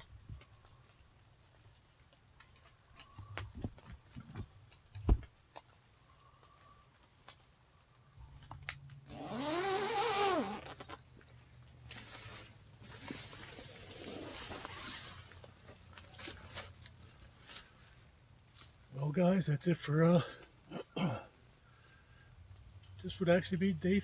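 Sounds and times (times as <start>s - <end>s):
zipper being pulled: 9.1s - 11.0s, 13.3s - 15.3s.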